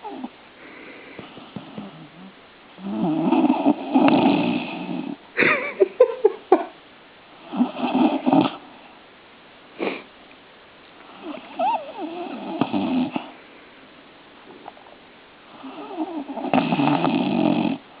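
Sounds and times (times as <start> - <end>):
dog snorting and snuffling: 0.0 - 0.3, 1.2 - 5.2, 7.4 - 8.7, 11.0 - 13.4, 15.5 - 17.8
dog snoring: 0.0 - 5.2, 7.4 - 8.7, 11.0 - 13.4, 15.5 - 18.0.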